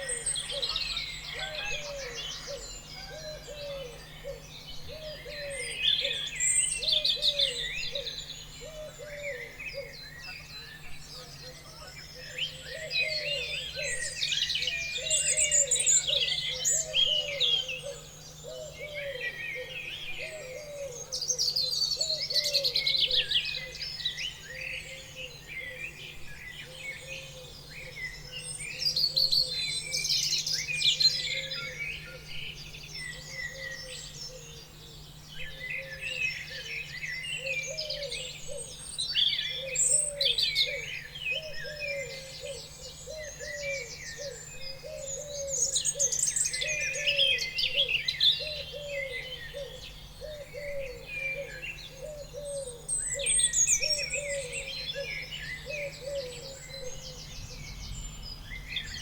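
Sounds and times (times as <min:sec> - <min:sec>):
birds singing and calling: 0:00.0 - 0:59.0
faint steady hum: 0:00.0 - 0:59.0.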